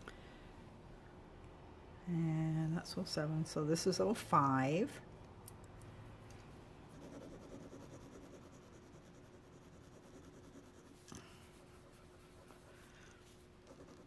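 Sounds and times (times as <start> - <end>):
pencil scratching on paper: 6.9 - 14.0.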